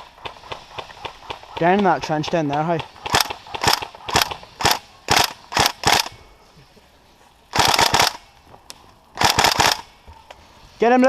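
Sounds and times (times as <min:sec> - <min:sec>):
electric rifle firing bursts: 0:00.3 - 0:06.1, 0:07.5 - 0:08.3, 0:09.2 - 0:09.9.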